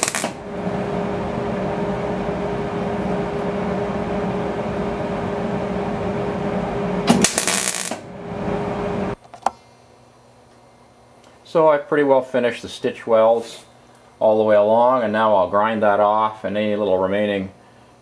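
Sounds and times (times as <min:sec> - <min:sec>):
welder arc crackling: 0:00.0 - 0:09.2.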